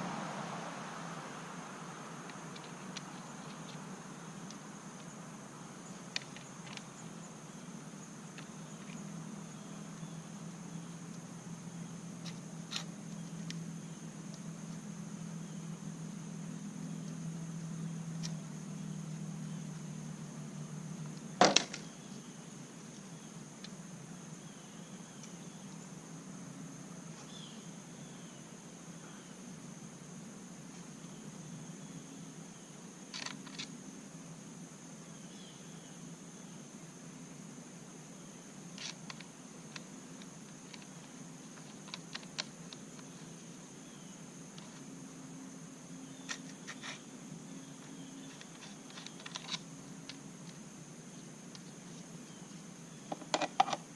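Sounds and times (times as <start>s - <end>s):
faint high-pitched whine: 0.0s - 53.9s
small parts clicking and tapping: 6.1s - 6.9s, 48.2s - 50.6s, 53.1s - 53.9s.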